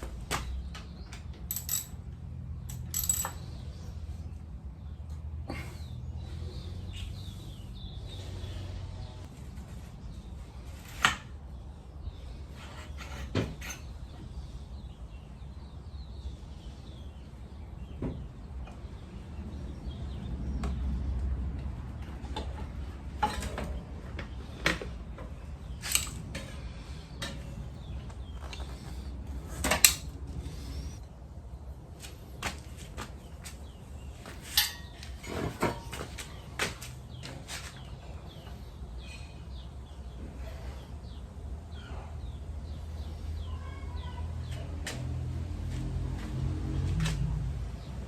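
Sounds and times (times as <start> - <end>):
low background hum: 0.0 - 44.7
metallic clinks of hand tools: 1.5 - 2.0, 2.7 - 3.4, 25.8 - 26.2.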